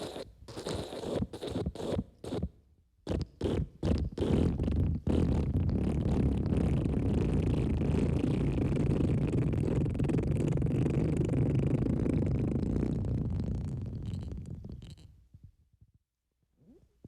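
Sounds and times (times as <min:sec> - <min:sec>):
wet fart: 0:03.1 - 0:15.1.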